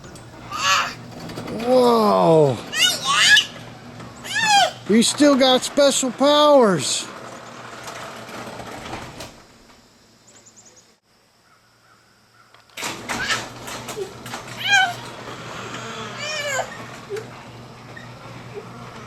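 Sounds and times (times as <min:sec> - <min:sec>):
rattling clicks: 0:00.0 - 0:02.0, 0:12.5 - 0:19.0
garage door opener humming: 0:00.0 - 0:10.7, 0:12.7 - 0:19.0
toddler squealing: 0:00.4 - 0:03.6, 0:04.2 - 0:04.9, 0:13.1 - 0:17.2.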